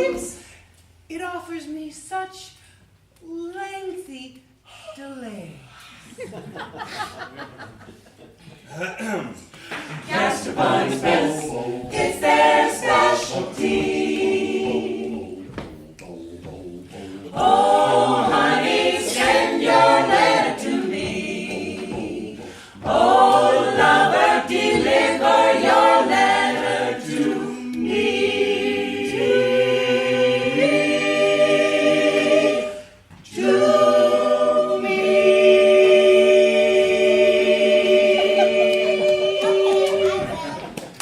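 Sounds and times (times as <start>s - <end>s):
vocal group singing a cappella: 0.0s - 0.7s, 9.4s - 40.6s.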